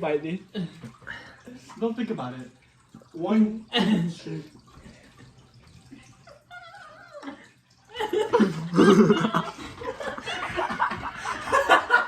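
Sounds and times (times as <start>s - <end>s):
people laughing loudly: 8.0s - 12.0s.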